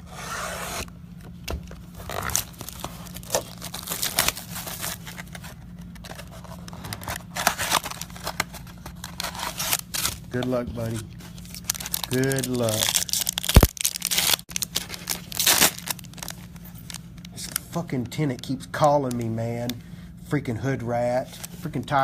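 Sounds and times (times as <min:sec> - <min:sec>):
steady low hum: 0:00.0 - 0:22.0
plastic wrapping crinkling: 0:01.9 - 0:17.6.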